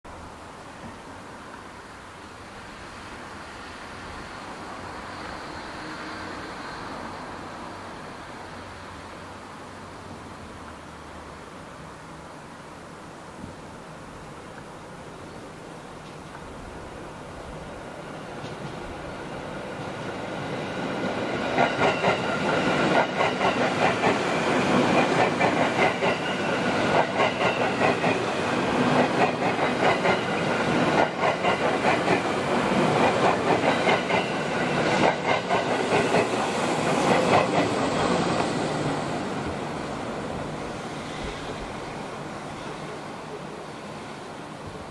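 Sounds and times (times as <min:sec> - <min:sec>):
train wheels clattering over joints: 0:21.4 - 0:38.6.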